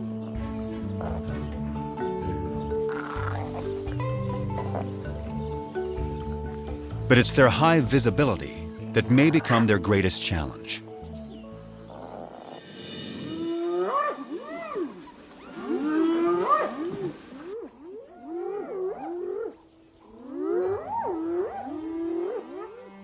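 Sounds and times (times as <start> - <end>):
hyenas calling: 2.3 - 6.5, 9.0 - 9.9, 13.3 - 23.0.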